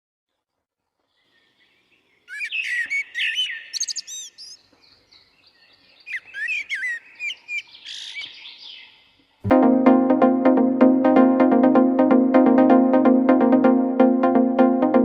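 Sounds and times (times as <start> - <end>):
birds chirping and calling: 1.1 - 9.4.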